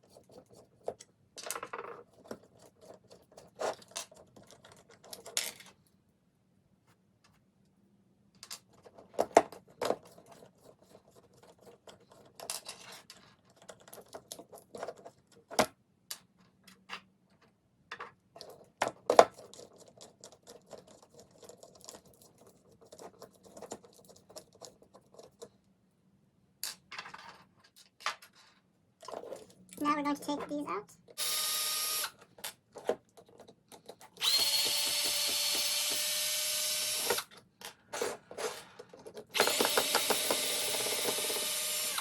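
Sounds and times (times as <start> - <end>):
tools clicking on robot frame: 34.2 - 37.3.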